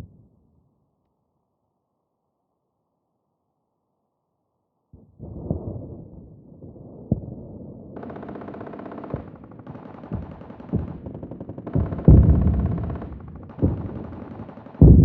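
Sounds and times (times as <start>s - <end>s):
machine-gun fire: 8.0s - 15.0s
explosions booming: 11.8s - 14.0s, 14.8s - 15.0s.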